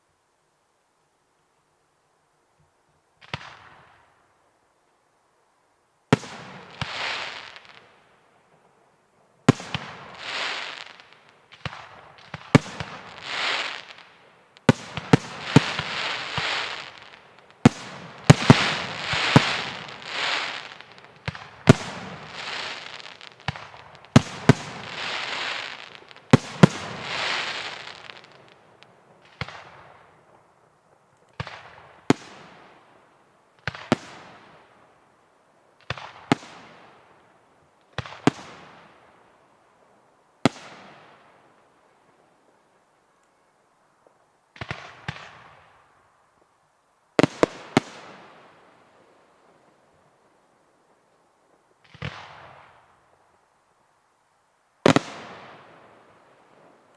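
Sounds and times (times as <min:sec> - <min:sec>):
fireworks hissing: 0:12.6 - 0:14.0, 0:14.7 - 0:28.4.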